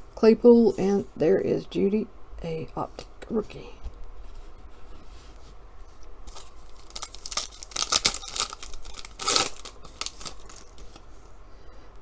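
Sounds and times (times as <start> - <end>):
wrapper tearing and crinkling: 6.3 - 11.0.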